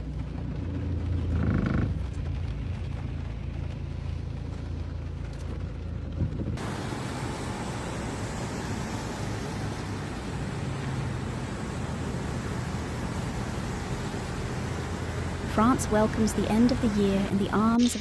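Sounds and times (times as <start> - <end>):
vehicle engine humming: 0.0 - 18.0
steady rushing noise: 6.2 - 18.0.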